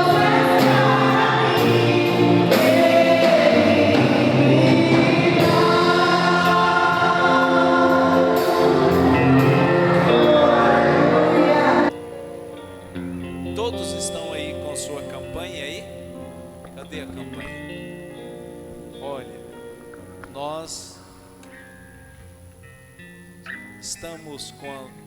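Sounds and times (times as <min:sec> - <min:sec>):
choir singing with accompaniment: 0:00.0 - 0:12.4.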